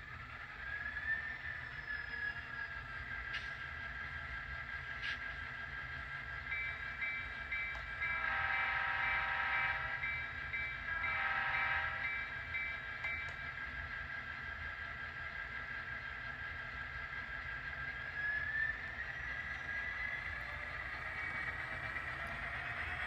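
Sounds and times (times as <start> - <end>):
model locomotive engine running: 0.0 - 23.0
horn blasts: 8.1 - 10.1, 10.9 - 12.2.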